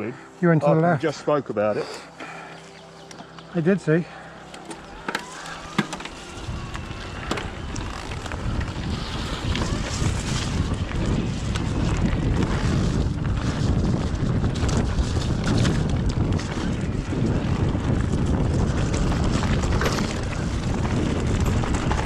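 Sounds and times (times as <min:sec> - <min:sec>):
bike tyre and frame rattle: 0:04.6 - 0:22.0
wind rushing over microphone: 0:04.8 - 0:22.0.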